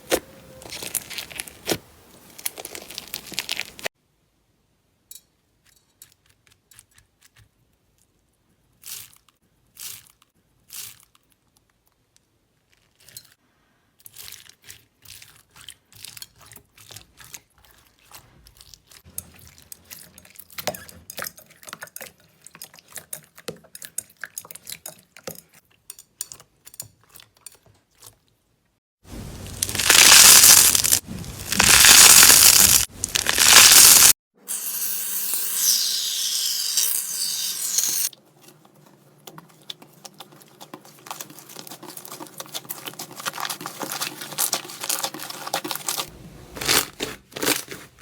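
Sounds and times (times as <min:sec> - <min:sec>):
slime squelching: 0:00.0 - 0:03.9, 0:29.1 - 0:34.2, 0:39.3 - 0:48.0
slime crackling and popping: 0:02.4 - 0:03.9, 0:29.3 - 0:34.2.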